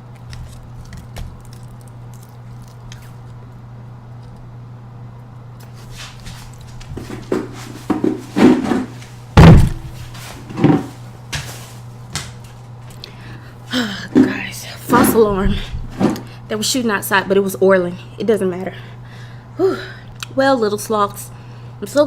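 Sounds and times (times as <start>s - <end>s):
steady low hum: 0.0s - 22.0s
loud heavy thump: 8.4s - 10.0s
door knocks and thumps: 9.4s - 9.9s.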